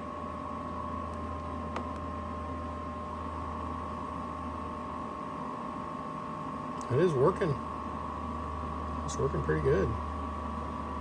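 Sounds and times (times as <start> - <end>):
heater blower fan humming: 0.0 - 11.0.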